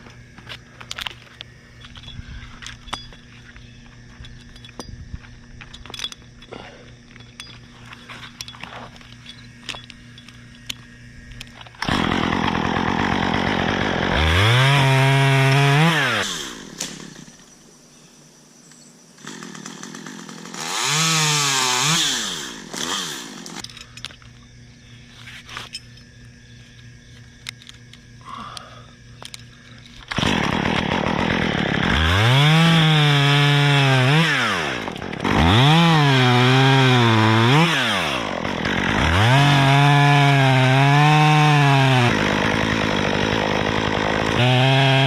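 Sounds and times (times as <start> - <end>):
chainsaw revving and idling: 11.7 - 17.4, 19.2 - 23.6, 30.1 - 45.0.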